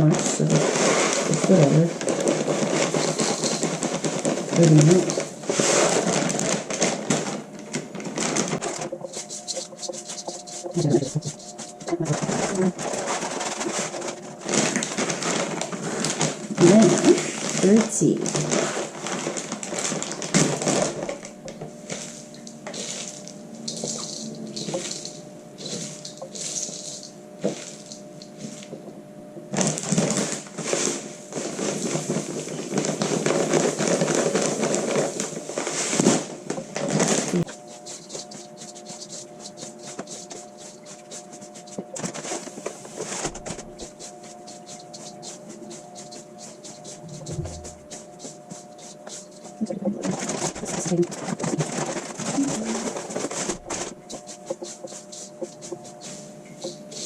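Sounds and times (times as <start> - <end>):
seeds pouring into bowl: 22.0 - 28.6.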